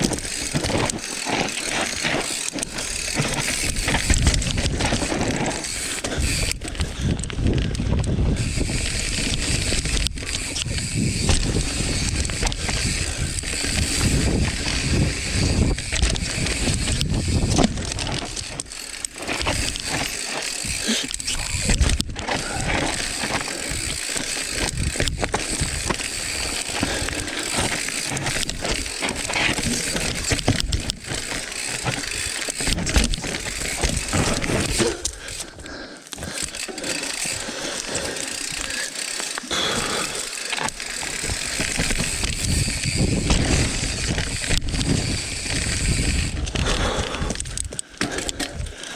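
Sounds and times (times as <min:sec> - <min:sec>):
bike tyres skidding over dirt: 0:00.0 - 0:47.4
bike knocking and rattling: 0:00.0 - 0:48.9
wind on microphone: 0:06.2 - 0:18.3, 0:41.2 - 0:47.6.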